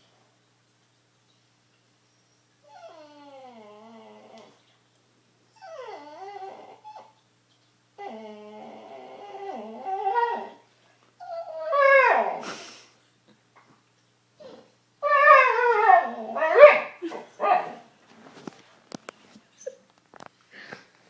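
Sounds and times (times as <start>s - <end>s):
dog whining: 2.6s - 4.6s, 5.5s - 7.2s, 8.0s - 10.6s, 11.2s - 12.4s, 14.4s - 17.8s, 19.6s - 19.9s.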